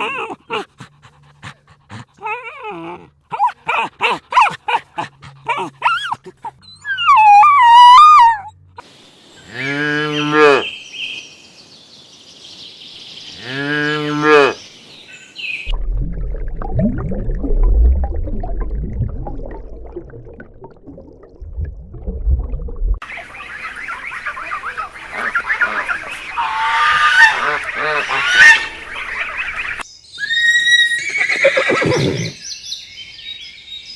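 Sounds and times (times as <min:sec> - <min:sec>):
faint hiss: 0:08.8 - 0:09.5
long low rumble: 0:15.7 - 0:23.0.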